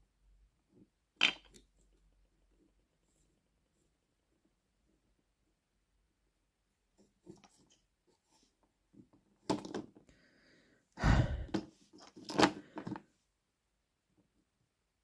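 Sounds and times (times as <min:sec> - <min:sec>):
knocks and rustles of small parts: 0:00.7 - 0:02.7, 0:06.9 - 0:10.1, 0:11.4 - 0:13.1.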